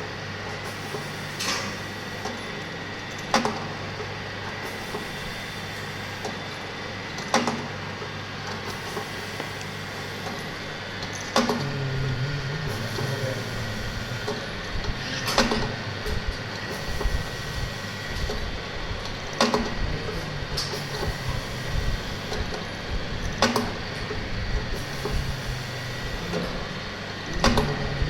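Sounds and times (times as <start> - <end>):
ventilator machine hum and whine: 0.0 - 28.0
ventilator sharp click: 20.5 - 23.8.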